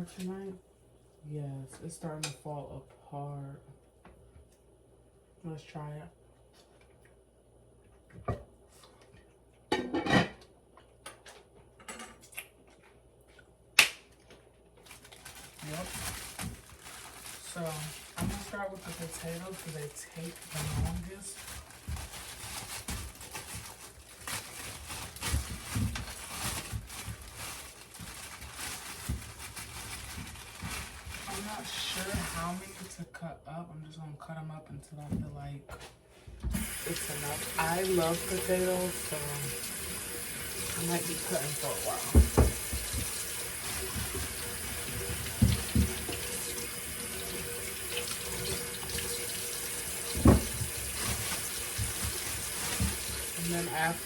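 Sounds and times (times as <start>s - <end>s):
rustling: 14.8s - 32.9s, 48.0s - 54.0s
faucet running into sink: 36.6s - 54.0s
kitchen knocks and light thuds: 41.7s - 46.4s, 50.0s - 53.3s.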